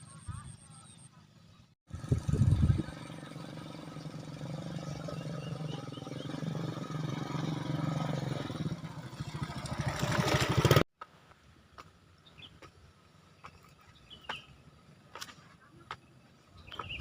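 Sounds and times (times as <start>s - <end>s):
engine running with fast pulse: 0.0s - 10.8s.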